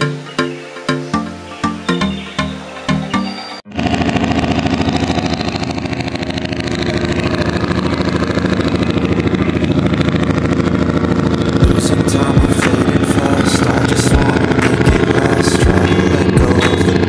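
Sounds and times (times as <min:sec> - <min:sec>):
boat engine running: 0:00.0 - 0:17.0.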